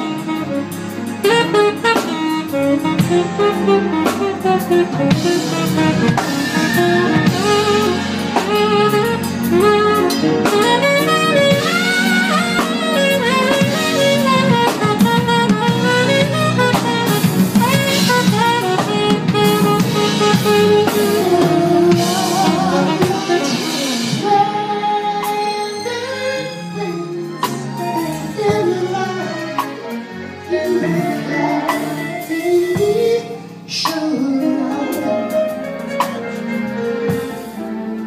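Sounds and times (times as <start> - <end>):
drums and bass: 0.0 - 38.0
lead melody with sliding notes: 0.0 - 38.0
live band instrumental: 0.0 - 38.0.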